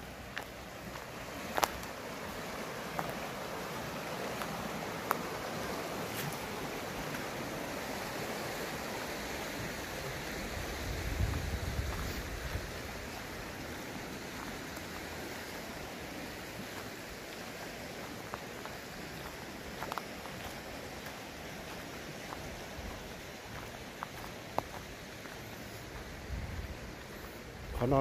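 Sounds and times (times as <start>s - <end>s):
river water flowing: 0.0s - 28.0s.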